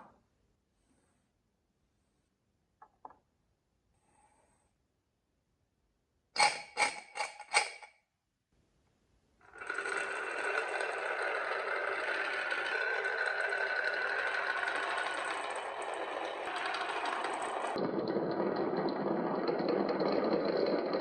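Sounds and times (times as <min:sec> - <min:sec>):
marble run whirring rattle: 0:09.5 - 0:21.0.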